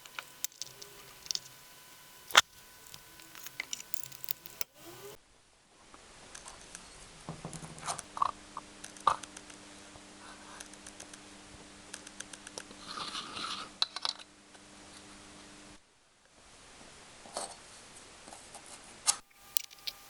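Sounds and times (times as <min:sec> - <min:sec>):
steady low hum: 0:00.0 - 0:05.2
tool clicks taps and scrapes: 0:00.0 - 0:05.2, 0:19.3 - 0:20.0.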